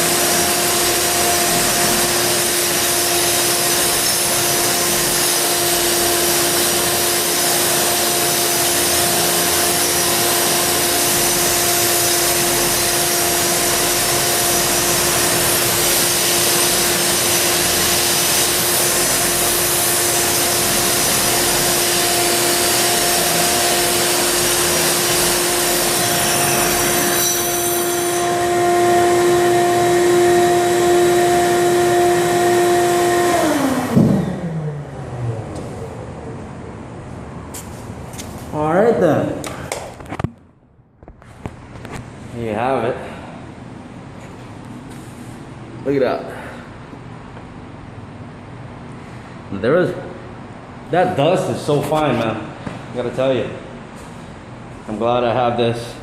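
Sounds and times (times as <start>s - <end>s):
floor grinder whining: 0.0s - 36.8s
shop vacuum droning: 0.0s - 39.7s, 41.4s - 56.0s.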